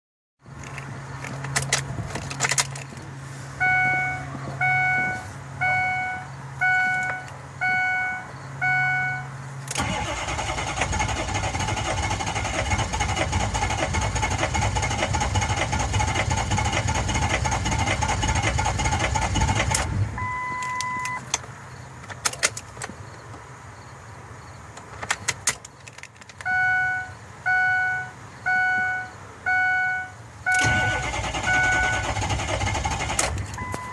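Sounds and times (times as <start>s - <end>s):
dashboard warning chime: 3.6s - 9.3s, 20.2s - 21.2s, 26.5s - 32.1s, 33.6s - 33.9s
two-tone beep: 3.6s - 9.3s, 20.2s - 21.2s, 26.5s - 32.0s, 33.6s - 33.9s
engine cranking on starter: 9.7s - 20.0s, 30.5s - 33.6s.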